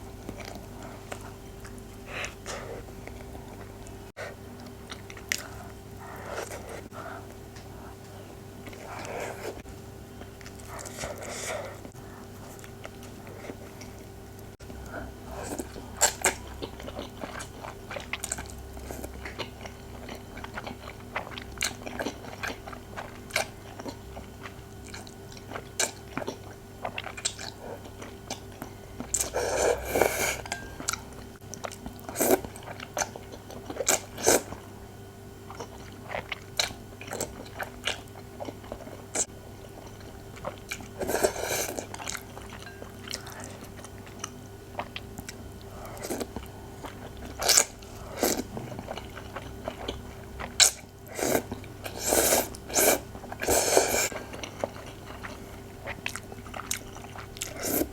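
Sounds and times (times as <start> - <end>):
faint steady hum: 0.0 - 57.9
person chewing noodles: 0.1 - 8.0, 8.6 - 34.8, 35.5 - 57.9.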